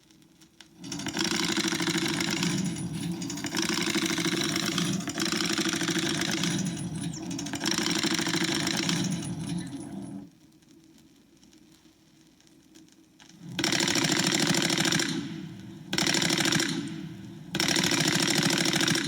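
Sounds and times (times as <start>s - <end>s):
gatling gun firing rapid bursts: 0.8s - 9.9s, 13.6s - 19.0s.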